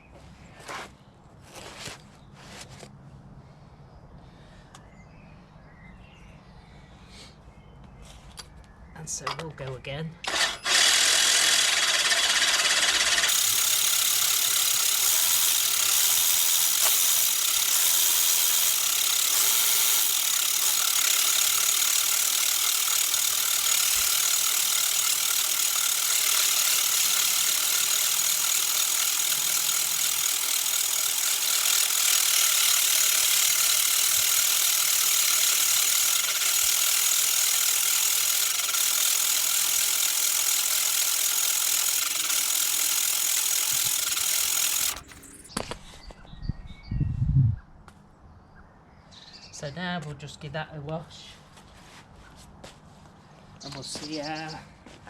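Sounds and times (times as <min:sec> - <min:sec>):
mower reel rasping grind: 0:10.3 - 0:45.5.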